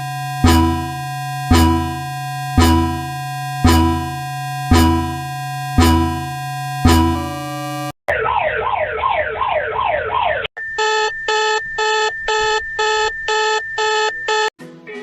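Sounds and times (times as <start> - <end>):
alert tone beeping: 0.0 - 7.9, 10.6 - 14.5
continuous high tone: 0.0 - 8.0, 10.6 - 14.5
wailing siren: 0.0 - 14.5.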